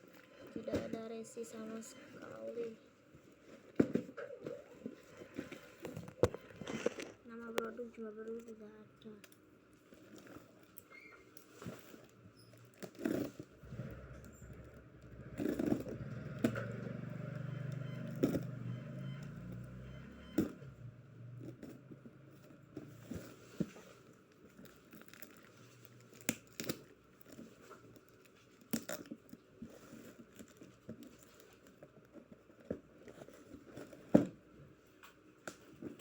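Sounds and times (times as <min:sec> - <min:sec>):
packaging crinkling and tearing: 0:05.6 - 0:07.3, 0:24.2 - 0:31.8.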